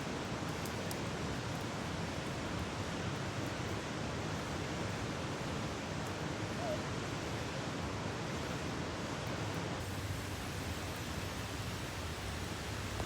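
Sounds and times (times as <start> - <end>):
campfire hissing: 9.8 - 13.0
fire crackles: 9.8 - 13.0.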